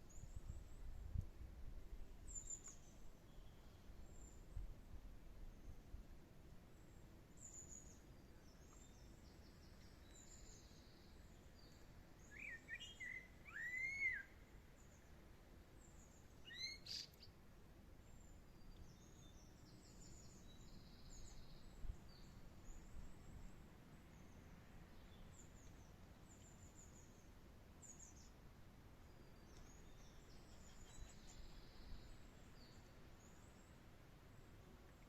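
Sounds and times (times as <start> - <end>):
birds singing: 29.2 - 33.4.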